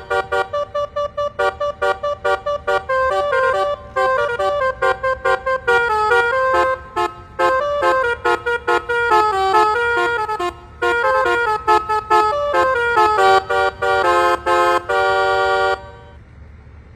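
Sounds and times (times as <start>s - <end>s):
bus air horn melody: 0.0s - 16.2s.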